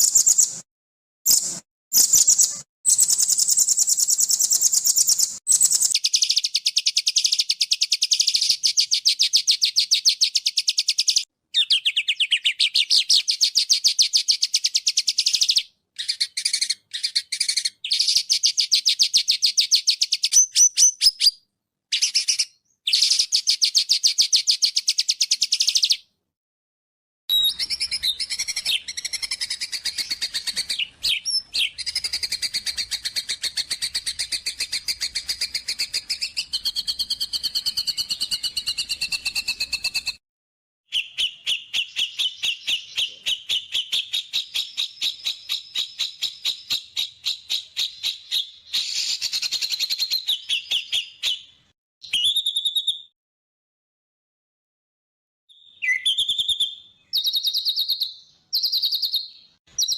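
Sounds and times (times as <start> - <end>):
songbird singing rapid trills: 1.3 - 26.0, 55.5 - 59.9.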